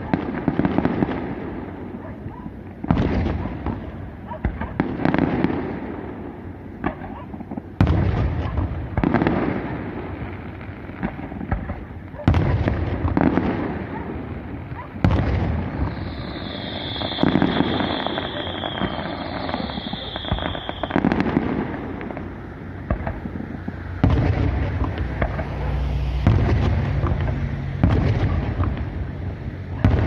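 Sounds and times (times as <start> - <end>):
fireworks exploding: 0.0 - 30.0
high-pitched hiss: 15.8 - 21.0.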